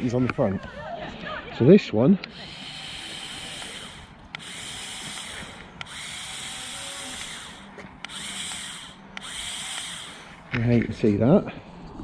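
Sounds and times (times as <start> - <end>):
electric motors whirring: 2.2 - 11.1
motor stopping click: 2.3 - 10.7.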